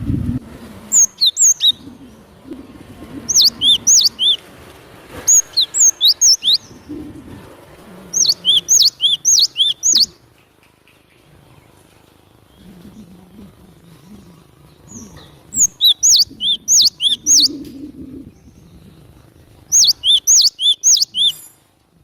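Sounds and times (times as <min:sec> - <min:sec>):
bird singing high notes: 0:00.9 - 0:01.8, 0:03.3 - 0:04.4, 0:05.3 - 0:06.7, 0:08.2 - 0:10.2, 0:15.6 - 0:17.6, 0:19.7 - 0:21.5.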